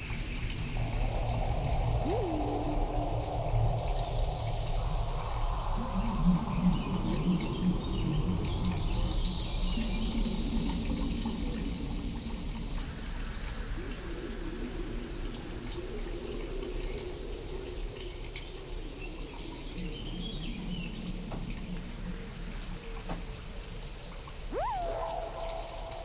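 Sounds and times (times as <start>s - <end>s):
rain hiss: 0.0s - 9.5s, 24.5s - 26.0s
wavering low tones: 0.8s - 4.2s, 24.5s - 26.0s
rising swoop tone: 1.7s - 3.4s, 24.5s - 26.0s.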